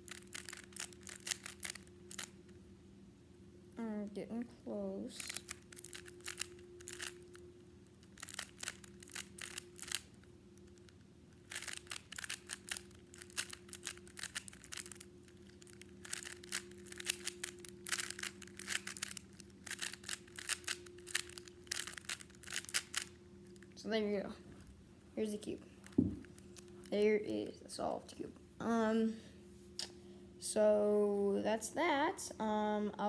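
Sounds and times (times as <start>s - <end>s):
faint steady hum: 0.0s - 33.0s
plastic cube layers clicking: 0.1s - 2.3s, 5.3s - 7.3s, 8.2s - 10.1s, 11.5s - 23.1s.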